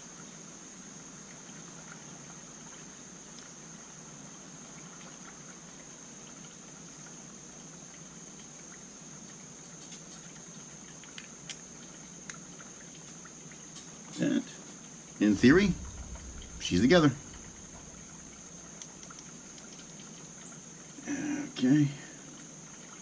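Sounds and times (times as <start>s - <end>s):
background hiss: 0.0s - 23.0s.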